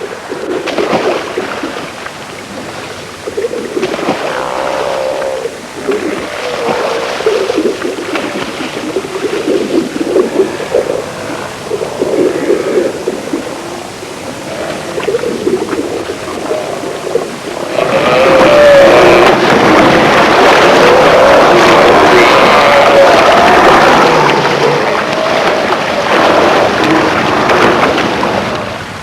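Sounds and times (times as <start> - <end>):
sea lions calling: 3.3 - 28.8
rush of noise: 10.3 - 29.0.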